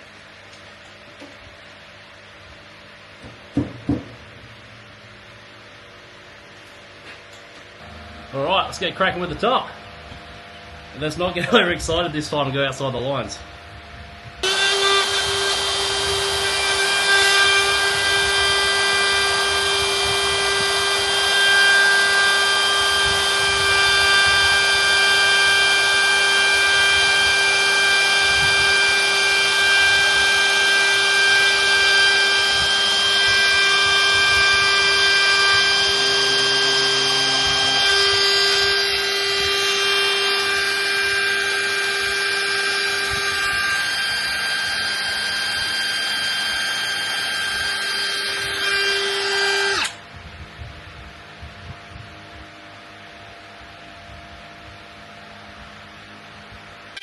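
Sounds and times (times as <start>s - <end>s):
electric router cutting wood: 14.4s - 50.0s.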